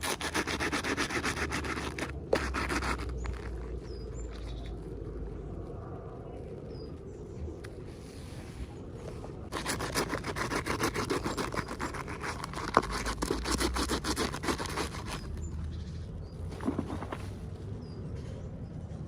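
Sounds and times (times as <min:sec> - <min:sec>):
packaging scratching and rustling: 0:00.0 - 0:04.8, 0:09.5 - 0:15.4.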